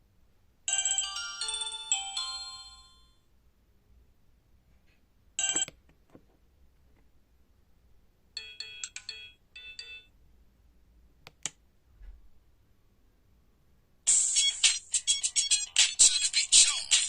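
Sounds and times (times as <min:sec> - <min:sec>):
phone ringtone melody: 0:00.7 - 0:03.2, 0:05.4 - 0:05.7, 0:08.4 - 0:10.1, 0:14.1 - 0:17.0.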